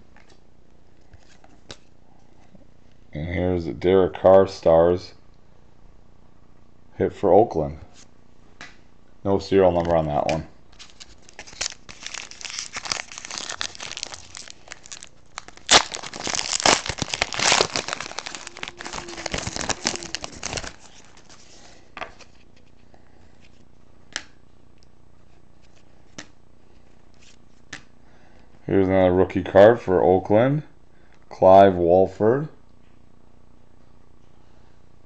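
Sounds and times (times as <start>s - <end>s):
plastic packaging crinkling and tearing: 10.7s - 22.4s.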